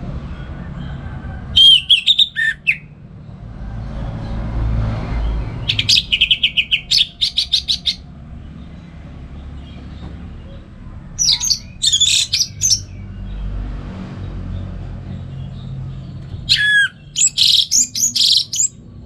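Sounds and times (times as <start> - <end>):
thrush singing: 1.6 - 2.9, 5.6 - 8.0, 11.2 - 12.9, 16.5 - 18.7.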